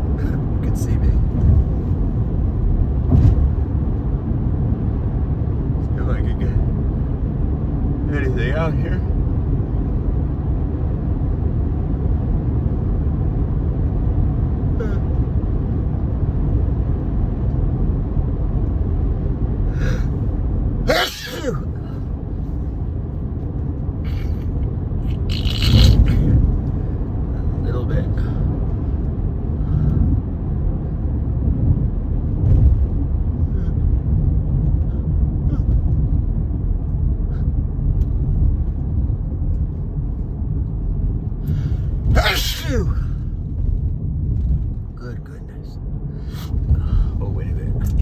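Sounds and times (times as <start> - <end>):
steady low rumble: 0.0 - 48.0
sharp in-breath: 19.7 - 20.2, 41.5 - 42.0
man sneezing: 19.8 - 20.2, 20.9 - 22.0, 24.1 - 24.5, 41.6 - 43.2.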